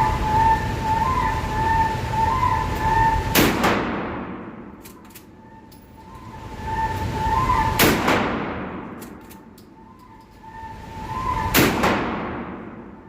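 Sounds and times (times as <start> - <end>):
wavering high tone: 0.0 - 3.3, 5.3 - 7.8, 9.4 - 11.6
shotgun shot: 3.4 - 4.3, 7.8 - 8.8, 11.6 - 12.6.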